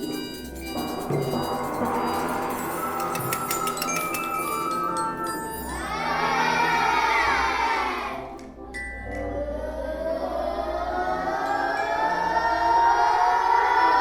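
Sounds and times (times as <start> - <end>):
voices gliding upward in pitch: 0.0 - 8.3
children's voices chorus: 0.8 - 8.6, 9.5 - 14.0.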